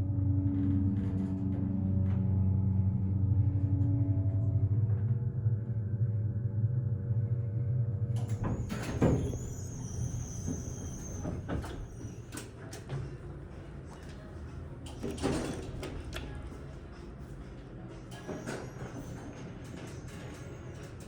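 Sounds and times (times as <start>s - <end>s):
elevator humming in travel: 0.0s - 21.0s
elevator doors sliding open: 8.1s - 13.6s, 14.2s - 16.8s.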